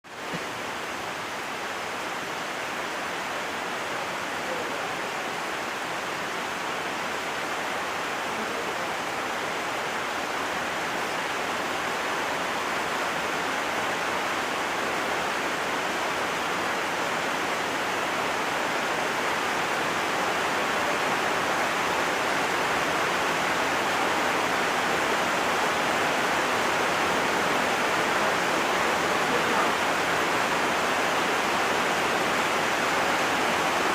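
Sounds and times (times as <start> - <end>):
heavy rain falling: 0.0 - 33.9.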